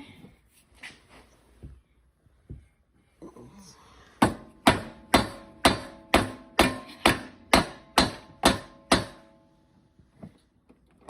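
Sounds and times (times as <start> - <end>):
hammer striking metal: 4.2 - 9.5.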